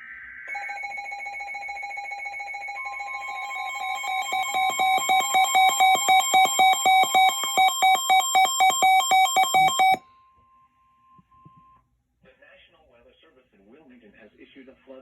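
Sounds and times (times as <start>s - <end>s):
rapid two-pitch alarm beeping: 0.5s - 10.0s.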